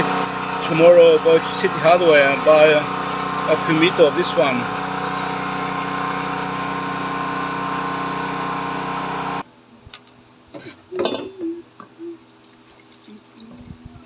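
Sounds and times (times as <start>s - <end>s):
small engine humming: 0.0s - 9.4s.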